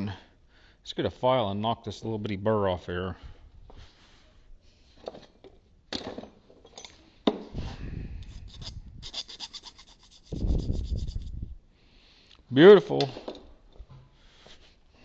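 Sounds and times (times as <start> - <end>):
hand file scraping metal: 8.2 - 11.3.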